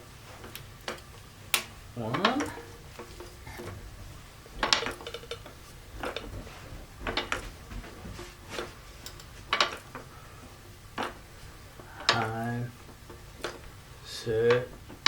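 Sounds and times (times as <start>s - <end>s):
floor jack clacking and rattling: 4.5s - 10.1s.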